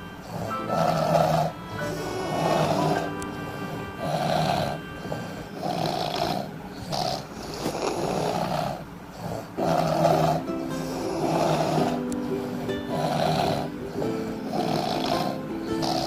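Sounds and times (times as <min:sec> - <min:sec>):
people snoring: 0:00.0 - 0:16.0.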